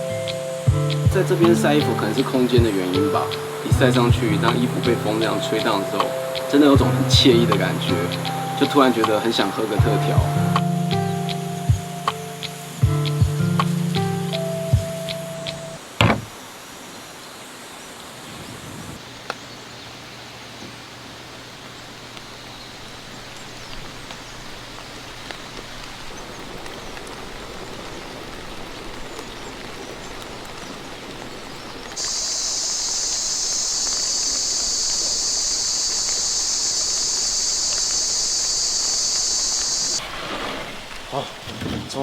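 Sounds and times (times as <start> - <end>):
high-pitched insect chorus: 0.0 - 15.8, 32.0 - 40.0
soft forest hiss: 0.0 - 41.5.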